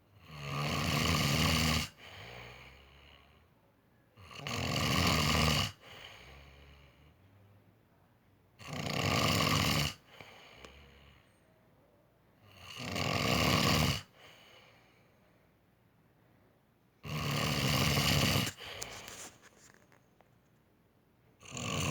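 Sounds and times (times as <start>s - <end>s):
man snoring loudly: 0.2s - 3.4s, 4.2s - 7.0s, 8.6s - 11.2s, 12.5s - 14.2s, 17.0s - 19.0s, 21.4s - 21.9s
quiet breathing: 1.9s - 4.2s, 5.7s - 8.4s, 9.9s - 12.6s, 14.0s - 16.8s, 17.5s - 20.6s, 21.4s - 21.9s.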